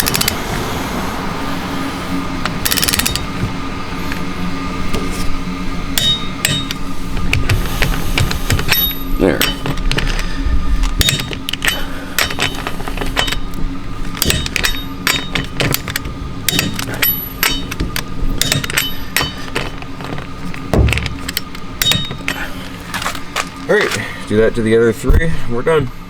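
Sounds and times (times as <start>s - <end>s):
torque wrench metal clicks: 0.0s - 0.6s, 2.4s - 3.5s, 6.0s - 24.0s.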